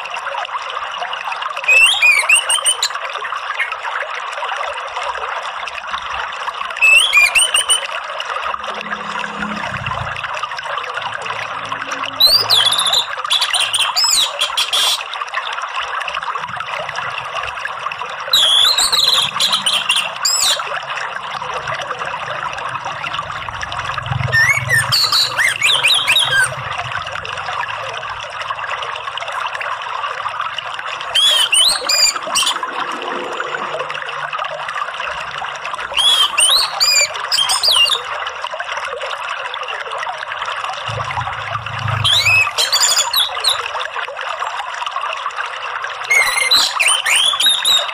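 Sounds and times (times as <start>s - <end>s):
bird singing high gliding song: 1.7s - 3.0s, 6.8s - 7.9s, 12.0s - 15.0s, 18.4s - 20.7s, 24.2s - 26.6s, 31.2s - 32.7s, 36.0s - 38.0s, 40.9s - 43.7s, 46.1s - 47.9s.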